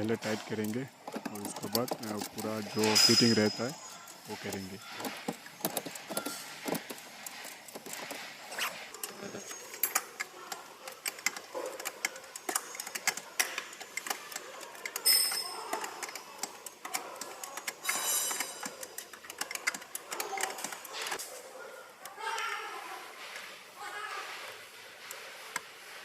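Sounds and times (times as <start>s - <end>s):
metallic tool clinks: 2.8s - 4.2s, 15.0s - 16.3s, 17.8s - 18.9s.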